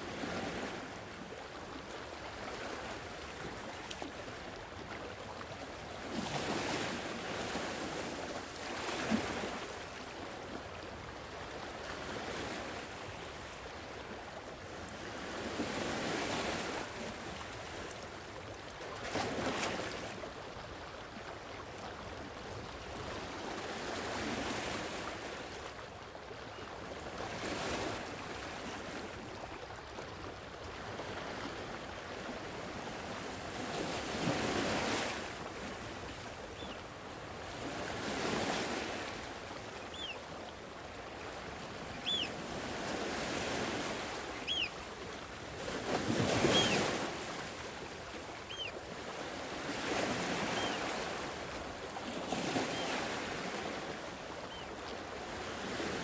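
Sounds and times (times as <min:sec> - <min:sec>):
sea waves breaking on shore: 0:27.0 - 0:56.0.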